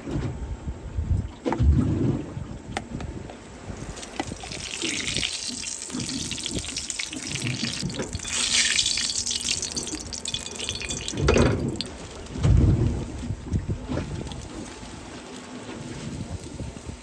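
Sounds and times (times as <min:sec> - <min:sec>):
wind gusts on microphone: 0:00.0 - 0:09.1, 0:10.8 - 0:17.0
water splashing and running: 0:03.6 - 0:17.0.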